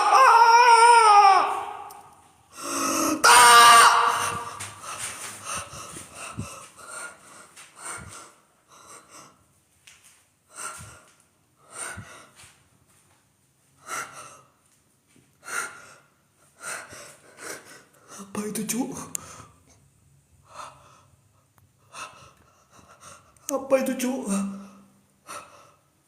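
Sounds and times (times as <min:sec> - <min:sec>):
person breathing hard: 0:01.9 - 0:03.2, 0:04.0 - 0:09.5, 0:10.5 - 0:12.6, 0:13.8 - 0:14.6, 0:15.4 - 0:18.3, 0:20.4 - 0:23.5, 0:24.7 - 0:26.0.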